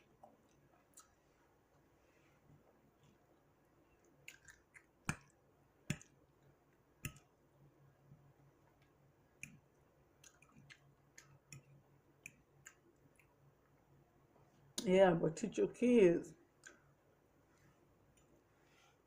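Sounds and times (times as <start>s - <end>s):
chewing with mouth clicks: 0.2s - 1.2s, 4.0s - 5.2s, 10.2s - 11.7s.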